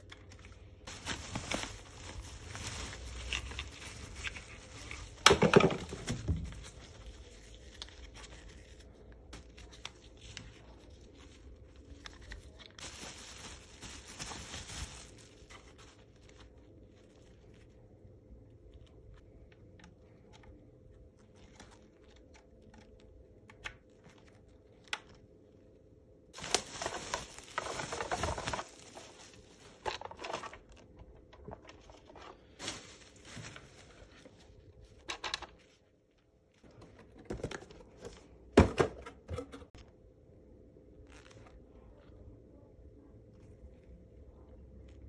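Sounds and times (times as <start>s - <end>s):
faint steady hum: 0.0s - 45.0s
rustling: 0.1s - 17.9s, 26.4s - 35.9s.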